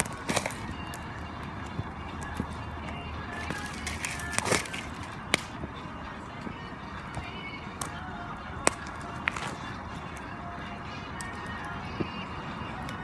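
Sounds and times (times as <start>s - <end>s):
sharp pops and cracks: 0.0s - 5.6s, 8.6s - 10.2s
bamboo fire crackling: 0.0s - 13.0s.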